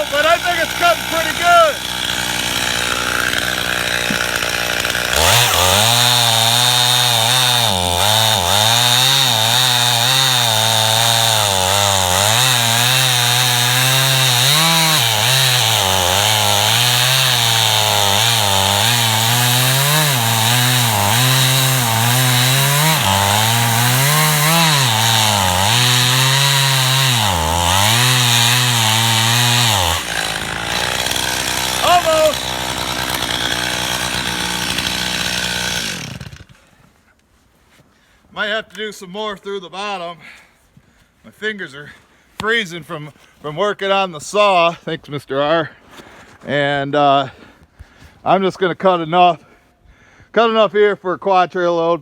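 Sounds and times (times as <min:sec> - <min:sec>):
chainsaw cutting through log: 0:00.0 - 0:36.7.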